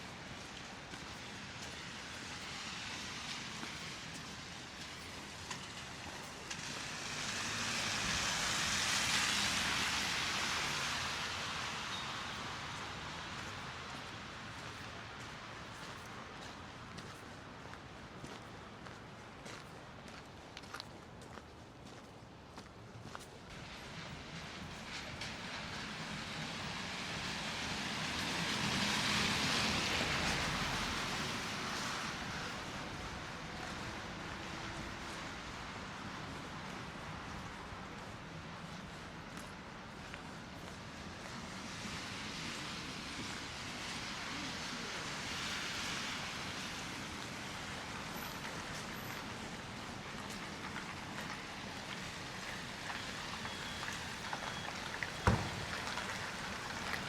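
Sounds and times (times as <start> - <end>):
vehicle tyres hissing on slush: 0.0 - 20.8, 23.5 - 57.0
vehicle passing by: 6.5 - 12.4, 23.6 - 37.8.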